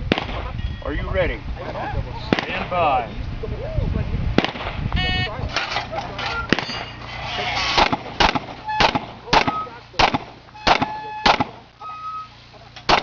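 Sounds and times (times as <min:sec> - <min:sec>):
pistol shots: 0:00.1 - 0:00.4, 0:02.3 - 0:02.6, 0:04.4 - 0:04.8, 0:07.6 - 0:11.6.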